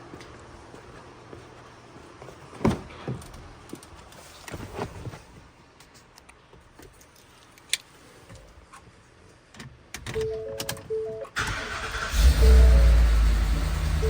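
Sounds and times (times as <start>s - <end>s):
electronic chime tones: 10.2s - 11.4s
engine running loud and deep: 12.1s - 14.0s.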